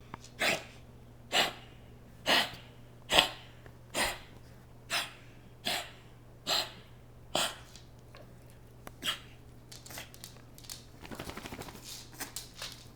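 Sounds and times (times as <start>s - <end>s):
dog coughing and wheezing: 2.3s - 4.3s, 4.9s - 7.7s.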